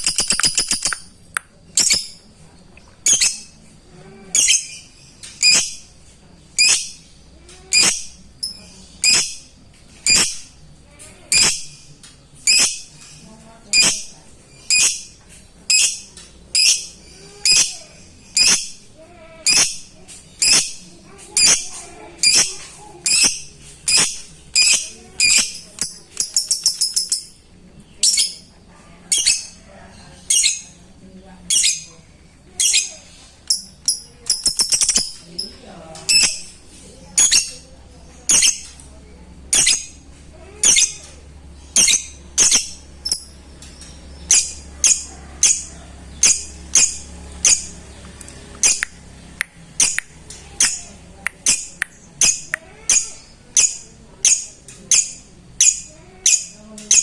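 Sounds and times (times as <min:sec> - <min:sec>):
lovebird chirping: 0:00.0 - 0:01.1, 0:01.7 - 0:02.2, 0:03.0 - 0:03.6, 0:11.3 - 0:11.8, 0:15.7 - 0:18.8, 0:21.4 - 0:27.4, 0:31.4 - 0:36.6, 0:40.6 - 0:57.0.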